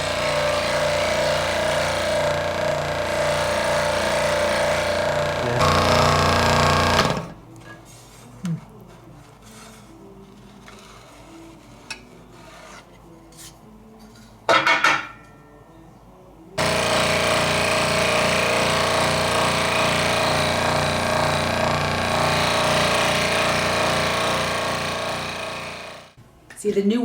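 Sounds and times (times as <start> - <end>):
power tool running: 0.0 - 7.4, 16.6 - 26.2.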